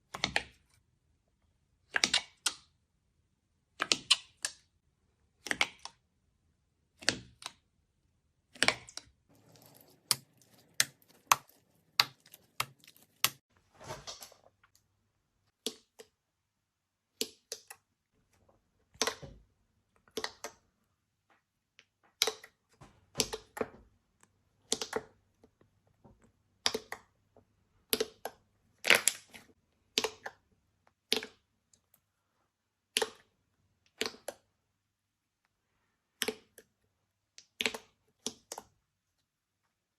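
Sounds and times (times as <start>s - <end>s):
slime crackling: 8.6s - 13.5s.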